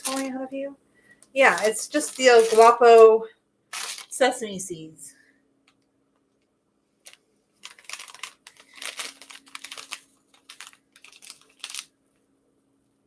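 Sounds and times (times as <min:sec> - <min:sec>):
plastic packet crinkling: 0:00.0 - 0:00.4, 0:01.3 - 0:03.0, 0:03.7 - 0:04.2, 0:07.0 - 0:12.0.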